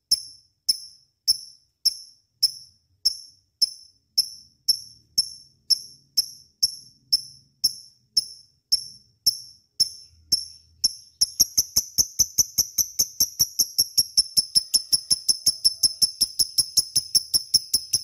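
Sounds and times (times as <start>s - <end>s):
bird giving sharp high chirps: 9.8s - 18.0s.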